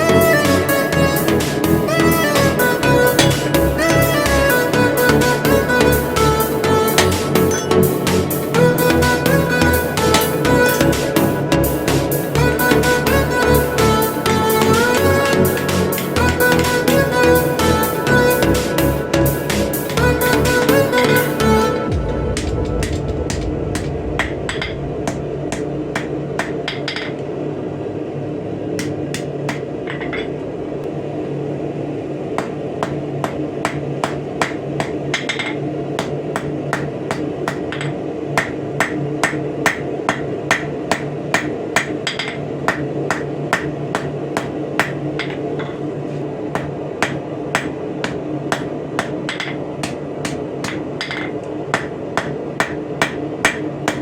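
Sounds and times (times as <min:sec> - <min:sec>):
steady hum: 0:00.0 - 0:21.1, 0:21.7 - 0:32.9
hammer striking steel on anvil: 0:03.1 - 0:11.4, 0:46.6 - 0:54.0.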